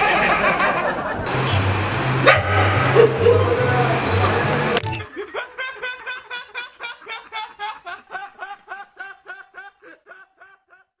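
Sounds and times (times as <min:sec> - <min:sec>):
snickering laughter: 0:00.0 - 0:01.3, 0:05.0 - 0:11.0.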